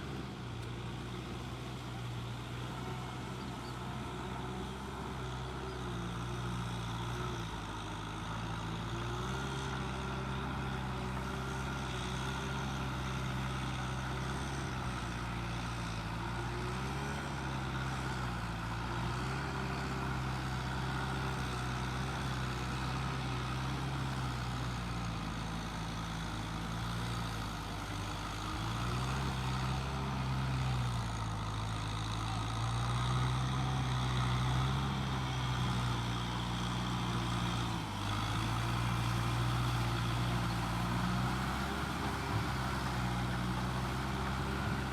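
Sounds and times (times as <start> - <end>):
engine running: 0.0 - 44.9.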